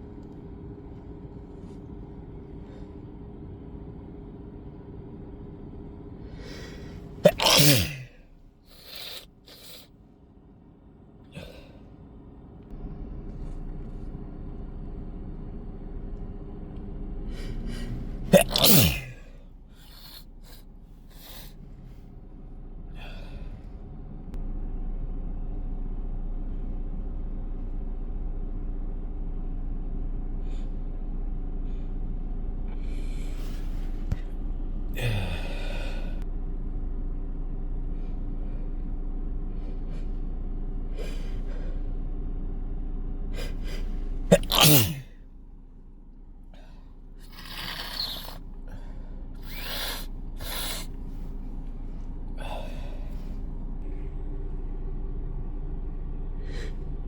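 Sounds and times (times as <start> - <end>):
low hum inside a car: 0.0 - 57.0
gasping inhale: 6.3 - 8.1, 8.7 - 9.9, 11.4 - 11.9, 17.3 - 21.7, 23.0 - 23.7, 35.0 - 36.2, 41.0 - 41.9, 46.6 - 51.2, 52.4 - 54.0, 56.4 - 56.8
sniffing: 6.3 - 9.9, 17.2 - 22.0, 43.4 - 45.2, 46.6 - 51.4
person sneezing: 6.4 - 9.8, 17.4 - 21.5, 43.4 - 45.2, 47.2 - 51.0.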